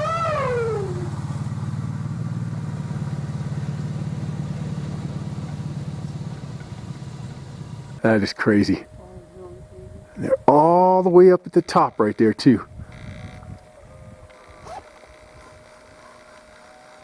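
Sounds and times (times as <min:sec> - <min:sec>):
short falling pitched tone: 0:00.0 - 0:02.4
vehicle engine running: 0:00.0 - 0:17.0.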